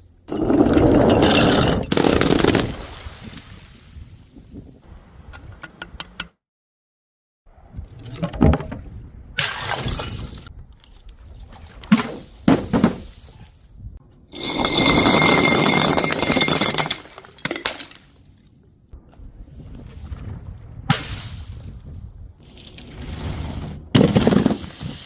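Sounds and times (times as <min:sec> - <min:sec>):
glass bottles smashing: 0:01.0 - 0:03.5, 0:09.4 - 0:10.4, 0:14.4 - 0:18.1.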